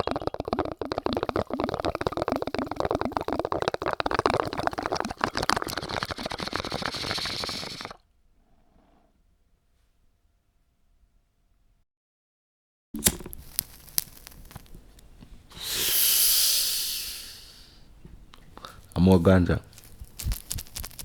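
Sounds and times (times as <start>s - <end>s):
water bubbling in a bong: 0.0s - 8.0s.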